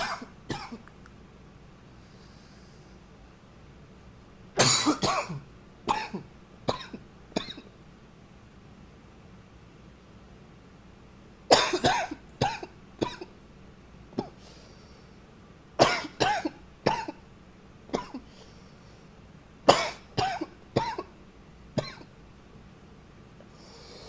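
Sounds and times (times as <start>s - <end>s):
man coughing: 0.0s - 0.8s, 4.6s - 7.6s, 11.5s - 13.3s, 15.8s - 17.2s, 17.9s - 18.3s, 19.7s - 21.1s.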